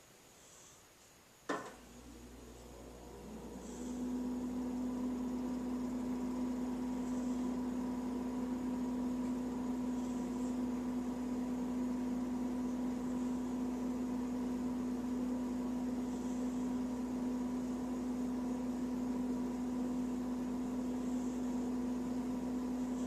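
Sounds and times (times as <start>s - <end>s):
faint high hiss: 0.0s - 2.7s
constant hiss: 0.0s - 23.0s
low electrical hum: 0.0s - 23.0s.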